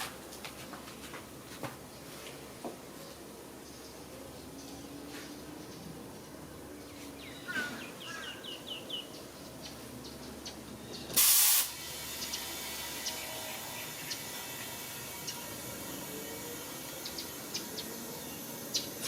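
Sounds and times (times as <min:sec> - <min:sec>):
bird chirps: 0:06.8 - 0:11.2
compressed air hissing: 0:11.1 - 0:15.4.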